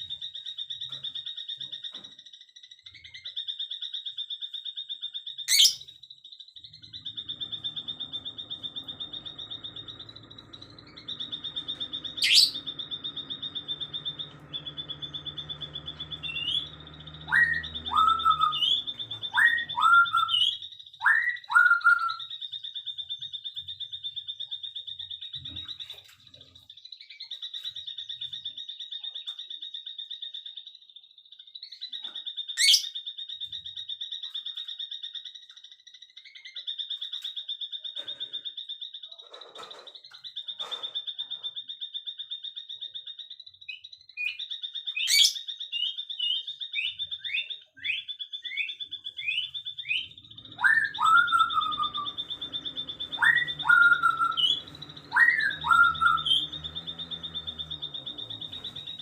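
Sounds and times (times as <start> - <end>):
bird trilling: 2.8 - 30.7, 31.6 - 59.0.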